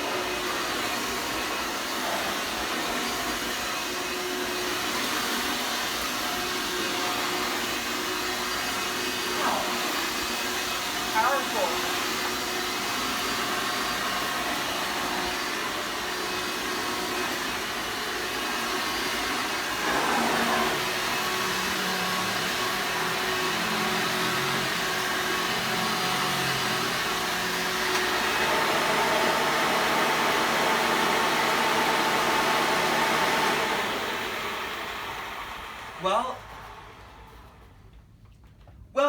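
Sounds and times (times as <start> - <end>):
vacuum cleaner running: 0.0 - 37.9.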